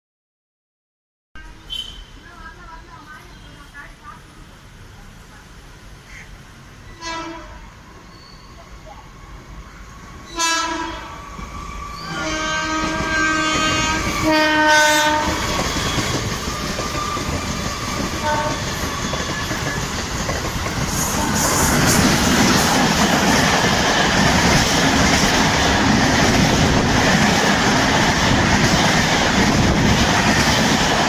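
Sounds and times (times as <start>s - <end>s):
train horn blasts: 7.0s - 7.8s, 10.3s - 11.2s, 12.0s - 15.5s, 18.2s - 18.9s, 21.1s - 21.8s
train rumbling and clattering: 8.8s - 31.0s.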